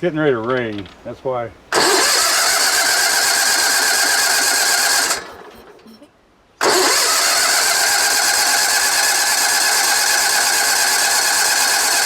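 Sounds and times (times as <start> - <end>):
electric starter cranking engine: 1.7 - 5.8, 6.6 - 12.0.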